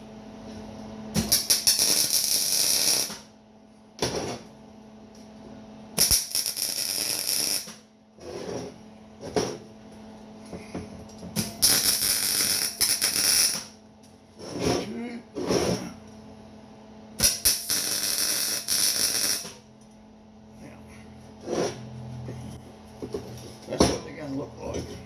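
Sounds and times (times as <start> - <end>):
steady low hum: 0.0 - 25.0
arc welder crackling: 1.1 - 3.3, 6.0 - 7.9, 11.4 - 13.8, 17.2 - 19.7.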